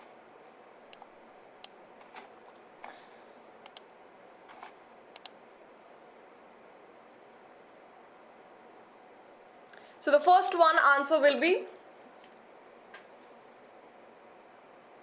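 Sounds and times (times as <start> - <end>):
faint room hiss: 0.0 - 15.0
sharp clicks: 3.6 - 3.9, 5.2 - 5.4.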